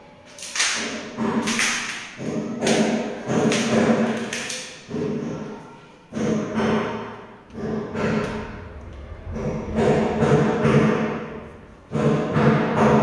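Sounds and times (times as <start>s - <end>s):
heavy ringing thumps: 7.5s - 13.0s.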